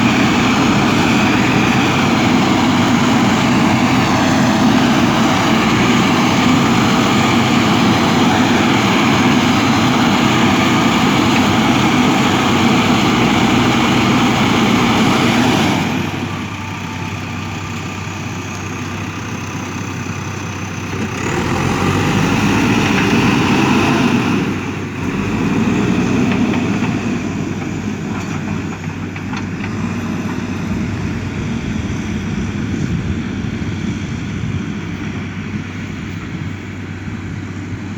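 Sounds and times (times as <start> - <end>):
backhoe diesel engine running: 0.0 - 37.9.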